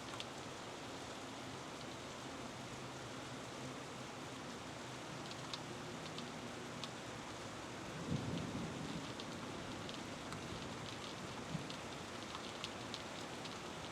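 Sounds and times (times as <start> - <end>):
steady rain: 0.0 - 13.9
low rumble of thunder: 8.0 - 11.7.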